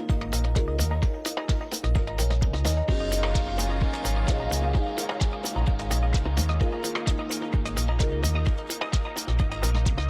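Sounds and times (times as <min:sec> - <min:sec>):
hi-hat ticks: 0:00.0 - 0:10.0
kick drum: 0:00.0 - 0:10.0.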